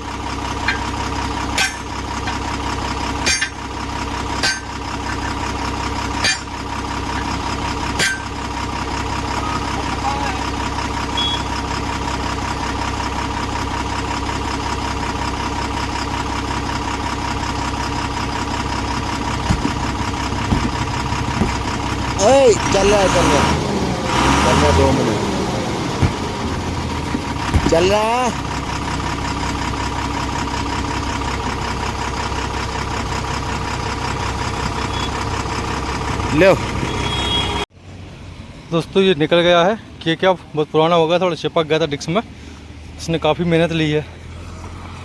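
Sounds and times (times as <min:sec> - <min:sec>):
engine idling: 0:00.0 - 0:37.6
light knocks: 0:19.5 - 0:21.8.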